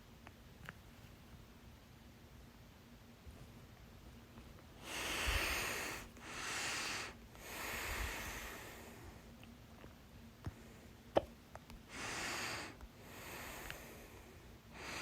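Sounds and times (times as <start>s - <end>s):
person breathing heavily: 4.8s - 9.3s, 11.8s - 15.0s.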